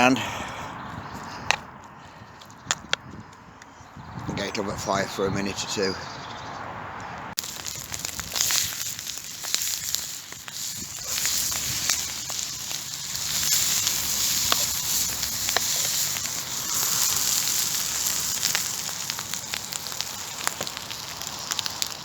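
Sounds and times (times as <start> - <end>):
campfire crackling and popping: 7.3 - 22.0
food sizzling in a pan: 7.4 - 22.0.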